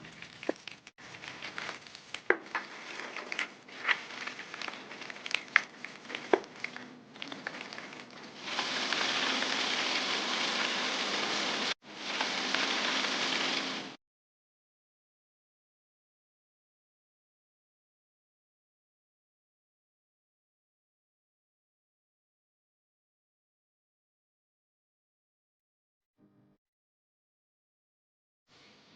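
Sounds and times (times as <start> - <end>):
oil popping and crackling: 0.0 - 14.0
chicken sizzling in oil: 1.6 - 14.0.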